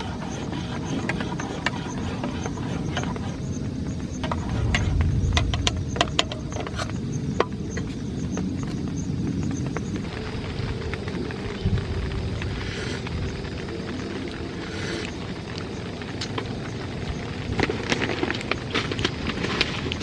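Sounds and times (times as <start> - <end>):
low rain rumble: 0.0 - 20.0
rain drops tapping on tent: 0.0 - 20.0.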